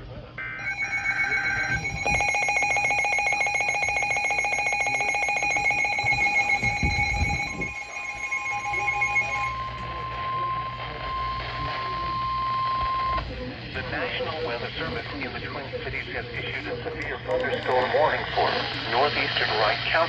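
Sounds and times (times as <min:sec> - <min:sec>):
rapidly pulsing electronic alert tone: 0:00.4 - 0:11.3
steady single-pitched warning tone: 0:00.4 - 0:13.2.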